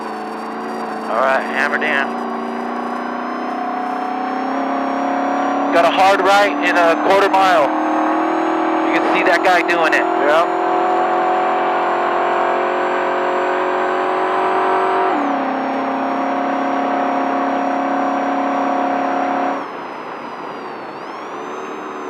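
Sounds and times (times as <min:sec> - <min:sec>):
truck engine revving high: 0:00.0 - 0:22.0.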